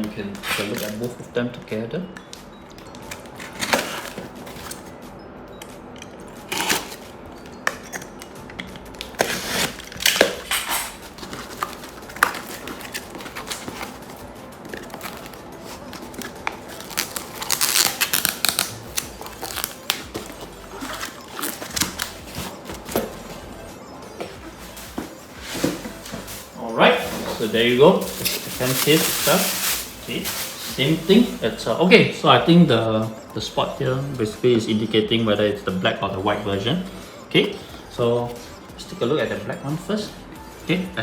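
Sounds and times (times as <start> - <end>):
hands unpacking packaging: 0.0 - 1.3, 2.2 - 4.9, 6.3 - 23.4, 24.2 - 31.7.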